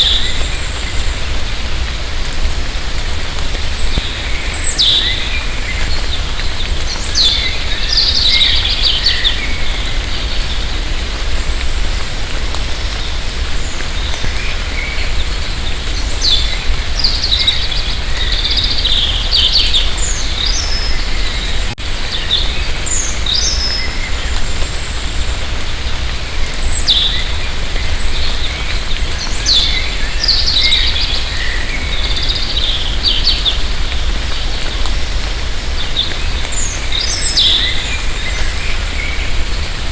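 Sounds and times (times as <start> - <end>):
light rain hiss: 0.0 - 39.9
birds chirping and singing: 4.0 - 6.2, 6.9 - 10.5, 14.5 - 24.4, 26.7 - 33.7, 36.0 - 39.3.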